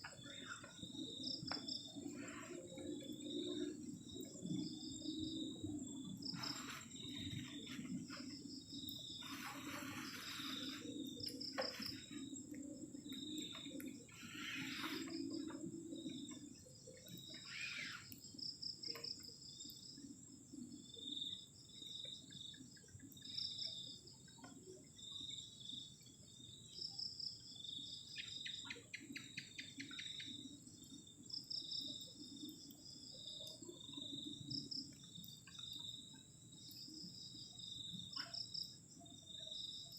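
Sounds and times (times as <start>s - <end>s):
crickets trilling: 0.0s - 39.9s
insects pulsed chirps: 0.0s - 39.9s
short rasping insect calls: 6.2s - 12.4s, 13.5s - 15.5s, 17.3s - 19.2s.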